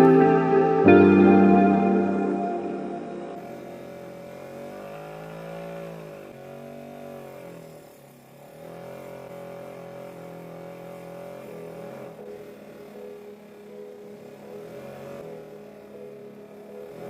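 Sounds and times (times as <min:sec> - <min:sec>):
small motor running: 0:03.4 - 0:17.0.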